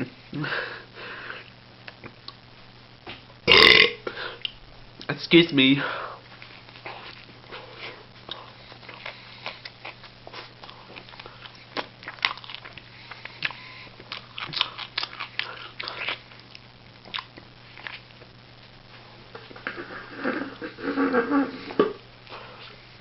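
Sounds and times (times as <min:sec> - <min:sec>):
faint steady hum: 0:00.0 - 0:23.0
person chewing: 0:06.4 - 0:18.2.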